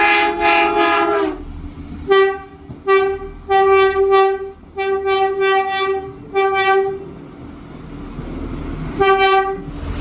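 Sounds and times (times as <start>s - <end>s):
train horn blasts: 0.0s - 7.1s, 9.0s - 9.8s.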